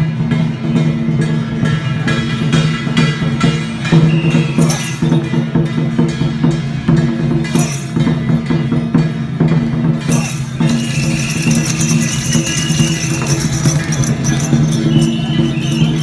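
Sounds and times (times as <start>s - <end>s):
music with drums and wood blocks: 0.0s - 16.0s.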